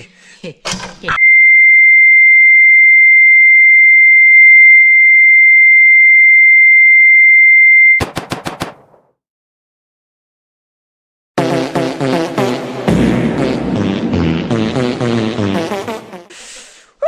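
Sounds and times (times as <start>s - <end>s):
high electronic beep: 1.2s - 8.0s.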